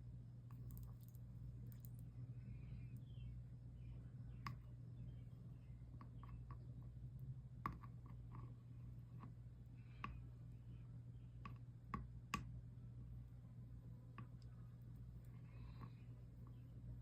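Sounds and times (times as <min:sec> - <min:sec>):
steady low hum: 0:00.0 - 0:17.0
light clicks of small objects: 0:00.5 - 0:02.1.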